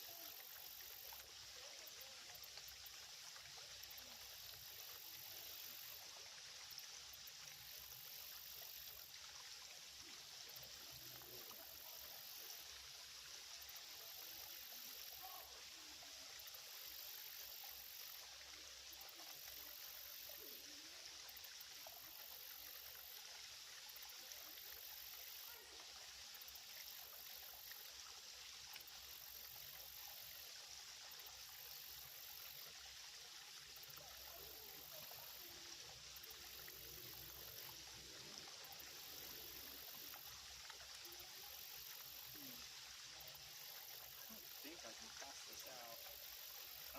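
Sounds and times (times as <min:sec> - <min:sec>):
creek water trickling: 0:00.0 - 0:46.9.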